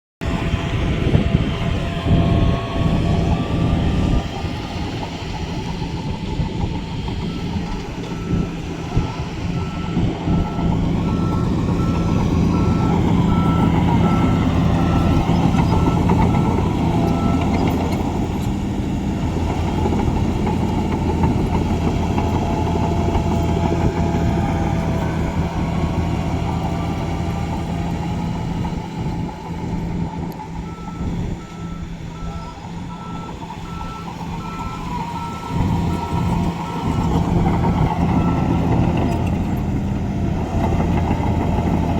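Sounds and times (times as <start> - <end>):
diesel machinery running: 0.2 - 41.9
reverse alarm beeping: 7.2 - 17.6, 30.6 - 37.1.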